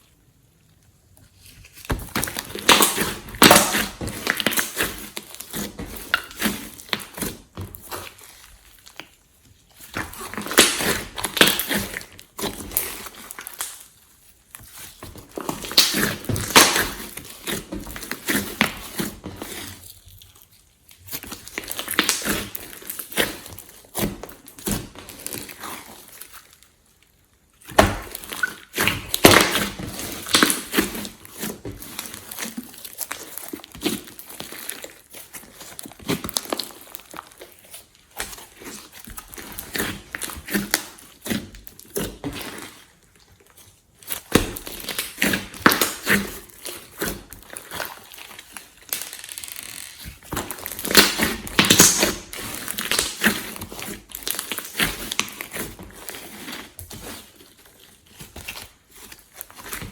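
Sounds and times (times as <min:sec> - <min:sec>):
slime squishing and popping: 0:01.7 - 0:09.1, 0:09.9 - 0:13.9, 0:15.2 - 0:19.7, 0:21.0 - 0:25.8, 0:27.6 - 0:42.8, 0:44.0 - 0:55.7.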